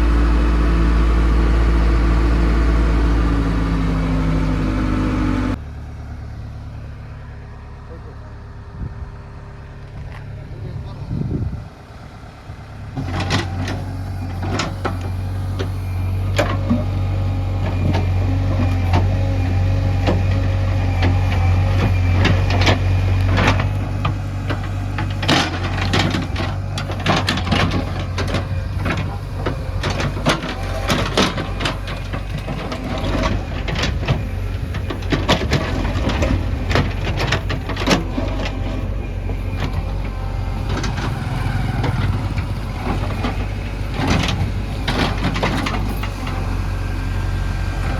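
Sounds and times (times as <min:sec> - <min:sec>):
diesel engine under load: 0:00.0 - 0:47.9
metal knocks and clanks: 0:20.0 - 0:46.4.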